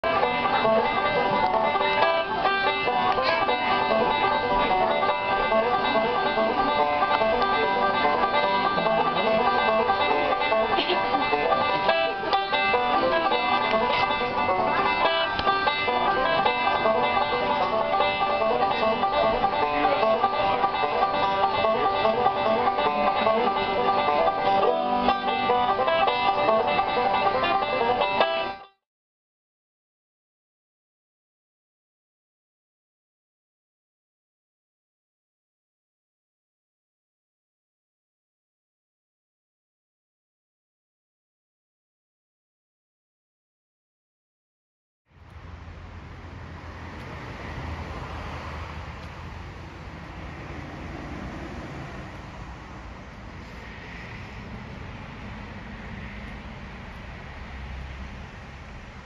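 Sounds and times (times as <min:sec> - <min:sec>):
instrumental music: 0:00.0 - 0:28.8.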